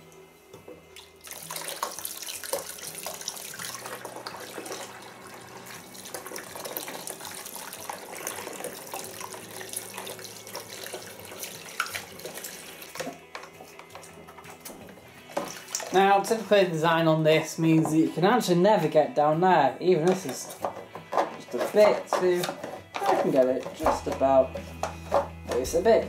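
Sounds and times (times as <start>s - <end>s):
tap water running into sink: 0.9s - 16.5s.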